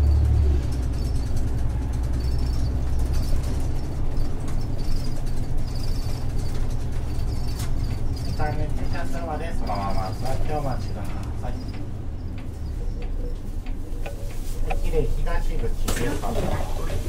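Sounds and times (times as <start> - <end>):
bus engine drone: 0.0 - 17.0.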